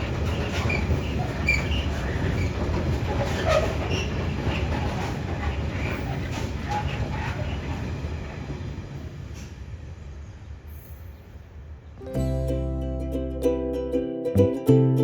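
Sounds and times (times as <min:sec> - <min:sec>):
freight train rumbling past: 0:00.0 - 0:15.0
plucked string music: 0:12.0 - 0:15.0.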